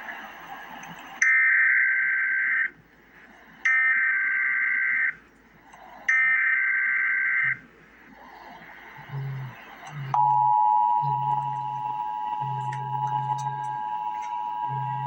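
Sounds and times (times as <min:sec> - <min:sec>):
two-pitch digital data tones: 0:09.9 - 0:15.0.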